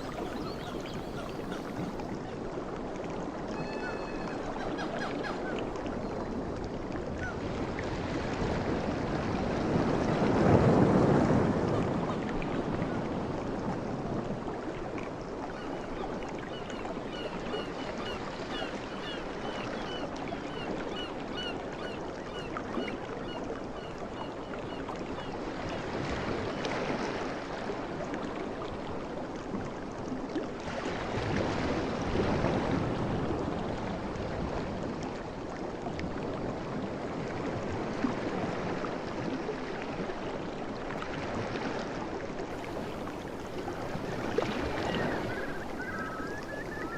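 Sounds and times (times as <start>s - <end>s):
bird chirping: 0.0s - 2.0s
ocean waves washing in: 0.0s - 2.2s, 41.3s - 46.9s.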